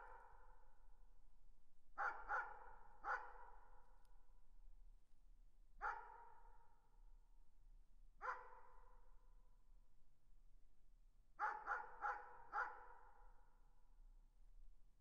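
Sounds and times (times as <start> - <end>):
distant dog barking: 2.0 - 3.5, 5.8 - 6.3, 8.2 - 8.6, 11.4 - 13.0.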